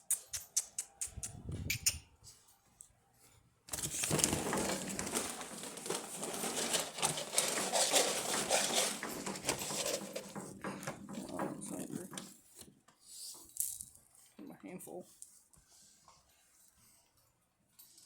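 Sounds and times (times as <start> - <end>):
dog food bag rustling: 3.7 - 10.6.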